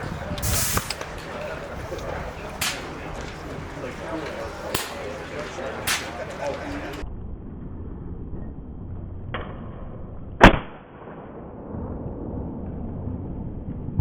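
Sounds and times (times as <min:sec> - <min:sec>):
air rifle shots: 0:00.4 - 0:07.0.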